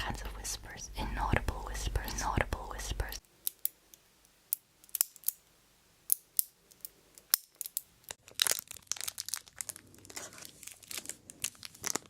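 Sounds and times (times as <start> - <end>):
soft crinkling: 6.6 - 12.0.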